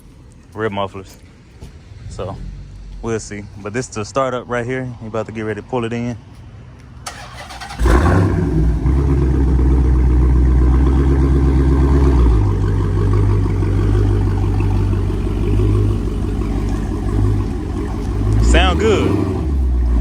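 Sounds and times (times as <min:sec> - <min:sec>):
loud car engine idling: 0:07.1 - 0:20.0.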